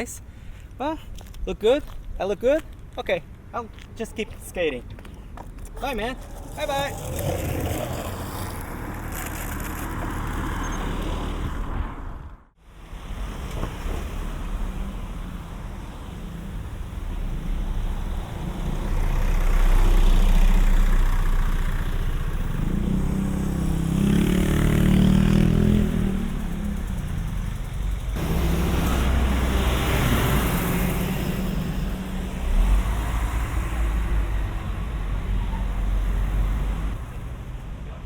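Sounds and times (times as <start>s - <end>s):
traffic rumble: 0.0s - 38.0s
vehicle driving past: 28.2s - 34.8s.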